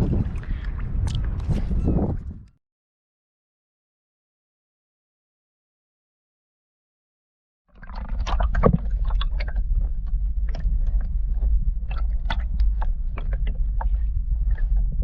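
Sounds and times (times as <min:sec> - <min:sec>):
wind buffeting microphone: 0:00.0 - 0:02.5, 0:08.3 - 0:15.0.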